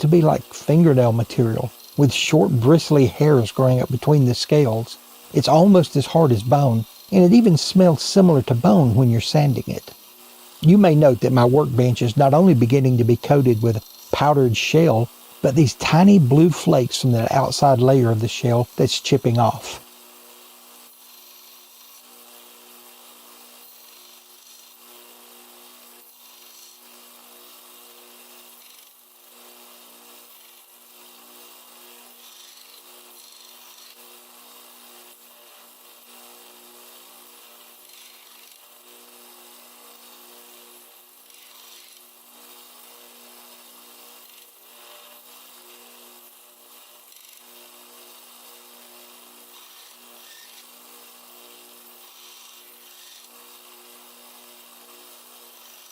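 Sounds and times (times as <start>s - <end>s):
shell scratching on abrasive: 32.2s - 34.0s, 49.5s - 50.7s, 52.0s - 53.3s.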